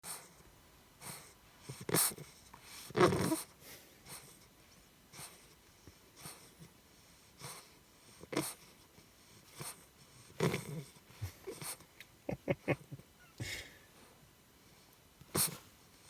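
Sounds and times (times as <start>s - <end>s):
puppy making breathy noises: 1.0s - 4.5s.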